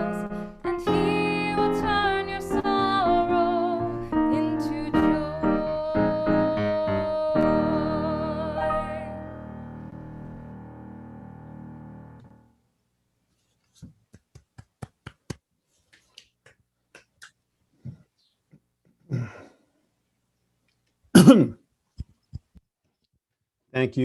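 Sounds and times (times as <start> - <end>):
instrumental chord ringing: 0.1 - 12.5.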